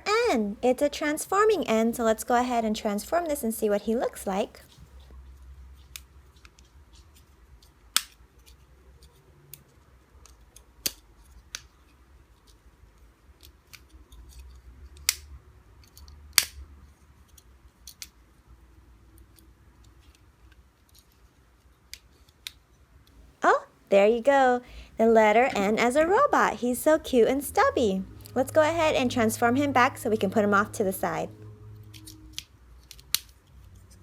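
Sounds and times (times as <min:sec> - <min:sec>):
plastic toy clicks and snaps: 0:07.6 - 0:11.7, 0:13.4 - 0:16.6, 0:17.3 - 0:18.2, 0:31.9 - 0:33.5.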